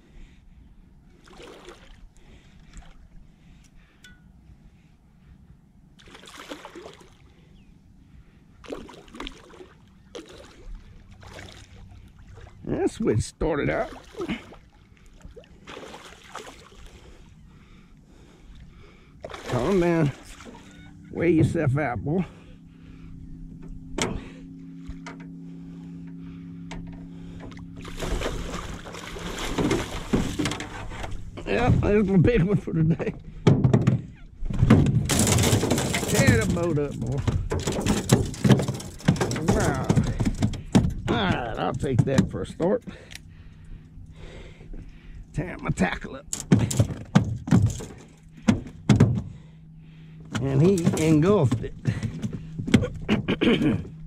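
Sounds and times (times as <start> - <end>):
low steady rumble: 0.0 - 6.1, 6.9 - 54.0
boat motor humming: 0.0 - 54.0
water splashing: 1.2 - 2.0, 6.0 - 7.2, 8.6 - 12.8, 13.6 - 17.1, 19.2 - 20.8, 27.5 - 32.0.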